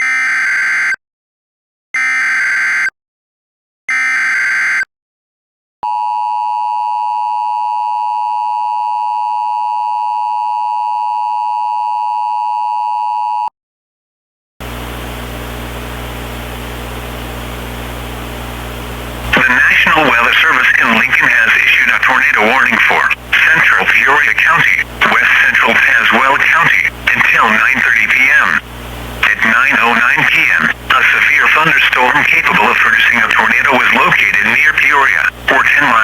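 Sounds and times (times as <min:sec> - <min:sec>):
steady hiss with low hum: 0:14.8 - 0:36.0.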